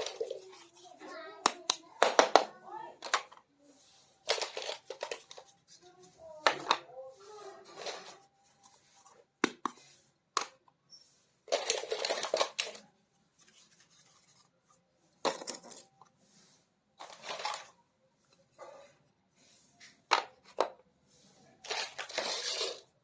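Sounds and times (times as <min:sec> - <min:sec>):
toy pieces rattling: 0:04.2 - 0:05.5, 0:11.5 - 0:12.8, 0:21.6 - 0:23.0.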